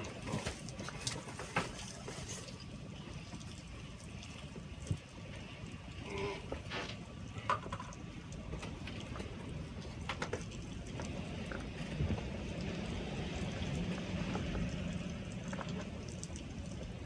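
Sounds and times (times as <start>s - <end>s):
low rumble: 10.6s - 17.0s.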